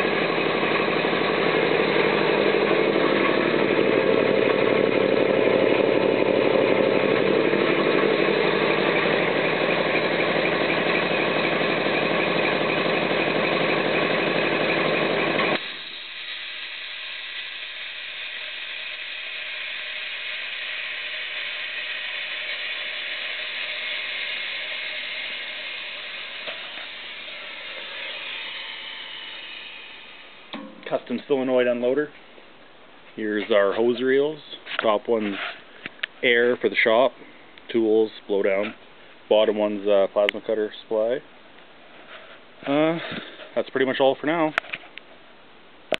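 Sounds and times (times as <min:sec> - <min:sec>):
electric air compressor running: 0:00.0 - 0:31.9
compressor unloader hissing: 0:00.0 - 0:32.2, 0:42.3 - 0:44.6.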